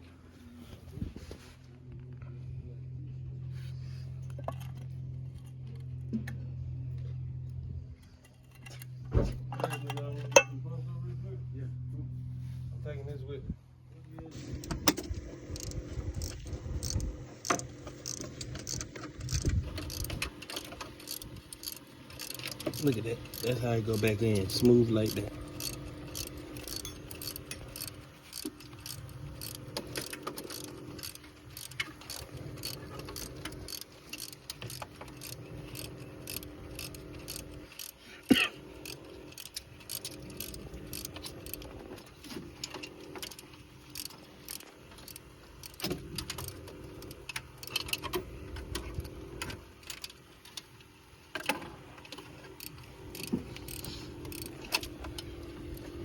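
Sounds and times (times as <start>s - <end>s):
steady low hum: 0.0s - 50.6s, 51.2s - 56.0s
metallic clicks of hand tools: 15.5s - 41.7s, 42.6s - 48.2s, 51.4s - 55.9s.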